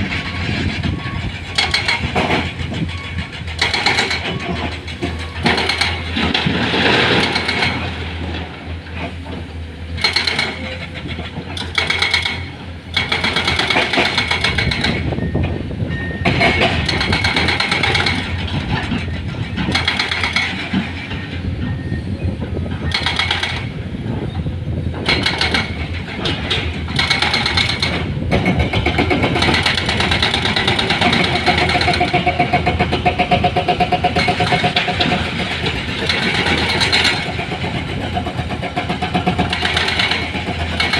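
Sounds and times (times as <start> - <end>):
heavy diesel engines running: 0.0 - 40.9.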